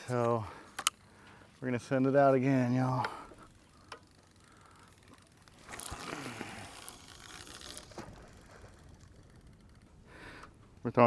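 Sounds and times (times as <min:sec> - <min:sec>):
fishing reel click: 0:00.1 - 0:01.0, 0:05.6 - 0:09.9
small ticks: 0:03.0 - 0:10.9
fishing line whooshing out: 0:05.6 - 0:09.2.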